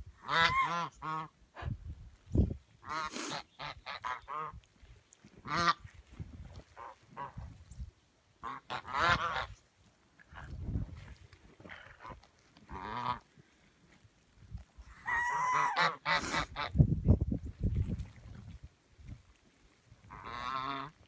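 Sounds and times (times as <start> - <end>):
geese honking: 0.3 - 1.3, 15.0 - 16.4.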